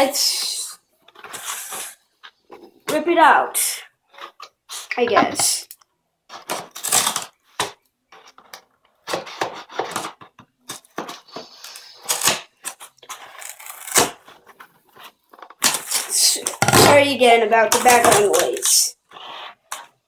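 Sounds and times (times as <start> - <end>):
packaging ripping: 6.4 - 7.4, 11.6 - 14.4.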